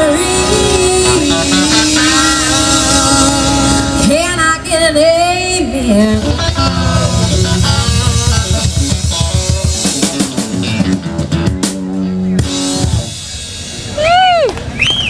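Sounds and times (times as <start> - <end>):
drum and cymbal hits: 0.0 - 4.2, 5.8 - 14.4
country-rock band playing live: 0.0 - 14.0.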